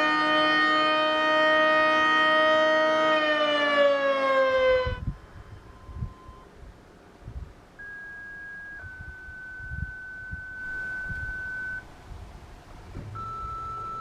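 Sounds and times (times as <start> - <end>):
tornado siren winding down: 0.0 - 6.4.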